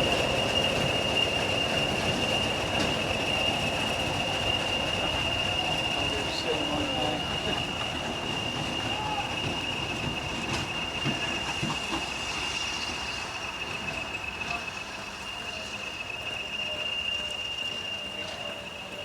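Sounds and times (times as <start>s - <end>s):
train passing: 0.0s - 19.0s.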